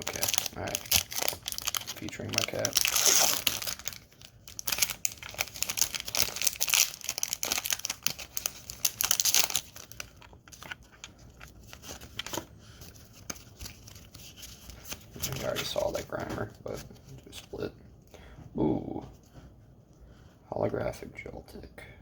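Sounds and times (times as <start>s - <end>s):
foil wrapper tearing and crinkling: 0.0s - 12.4s.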